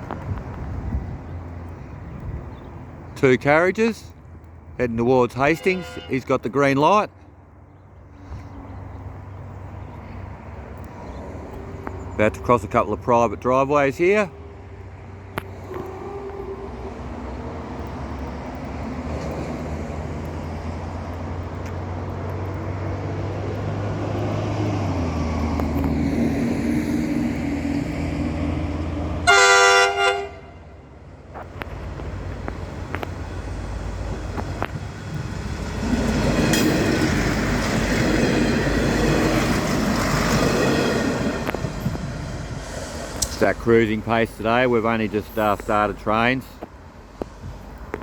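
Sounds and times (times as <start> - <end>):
diesel railcar engine running: 0.0 - 47.9
train horn blast: 5.4 - 6.3, 29.2 - 30.7
train wheels clattering on rails: 34.0 - 43.4.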